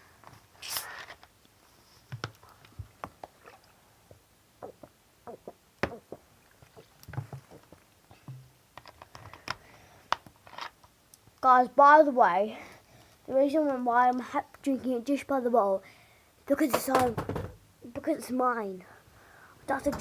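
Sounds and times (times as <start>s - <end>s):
low gulps: 3.3s - 8.3s.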